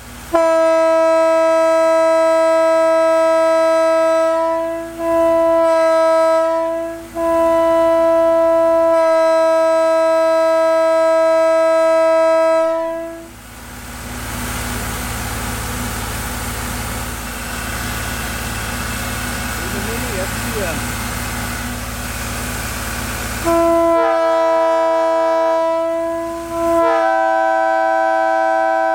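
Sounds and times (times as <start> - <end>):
steady mechanical rumble: 0.0 - 0.5, 12.7 - 27.5
locomotive air horn blasts: 0.3 - 13.4, 23.3 - 28.9.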